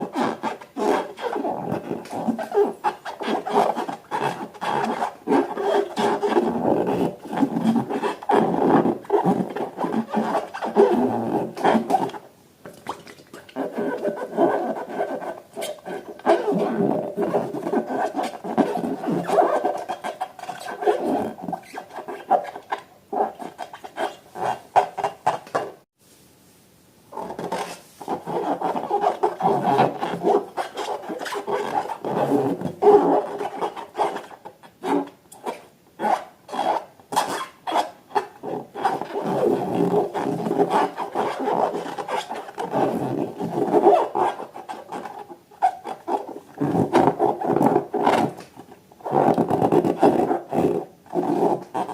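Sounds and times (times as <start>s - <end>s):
rubber balloons rubbing and squeaking: 0.0s - 12.2s, 13.3s - 25.8s, 27.1s - 51.9s.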